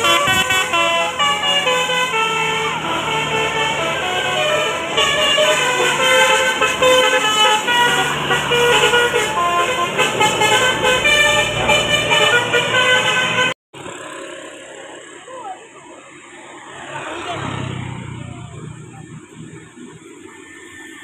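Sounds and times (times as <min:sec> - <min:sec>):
bus horn playing melody: 0:00.0 - 0:13.6.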